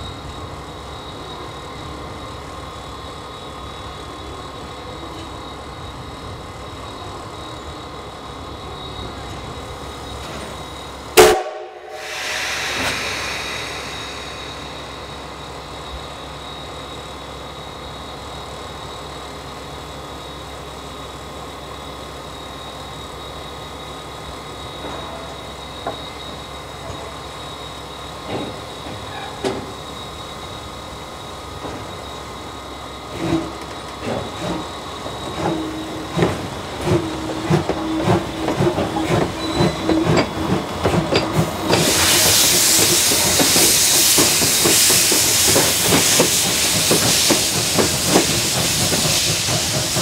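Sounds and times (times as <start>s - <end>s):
steam locomotive whistle blast: 11.2s - 15.9s
rush of noise: 11.7s - 16.2s.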